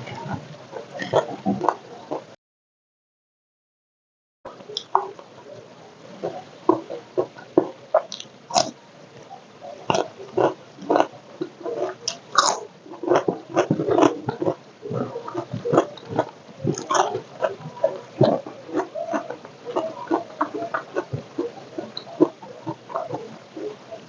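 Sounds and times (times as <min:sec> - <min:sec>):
person chewing crunchy food: 0:06.2 - 0:08.8, 0:09.8 - 0:24.0.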